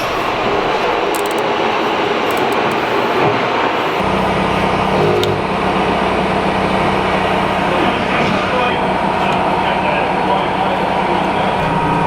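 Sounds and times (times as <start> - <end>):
loud machine noise: 0.0 - 12.0.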